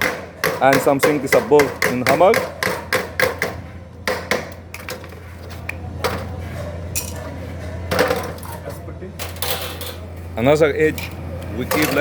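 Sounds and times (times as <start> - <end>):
hammer striking sheet metal: 0.0 - 4.6.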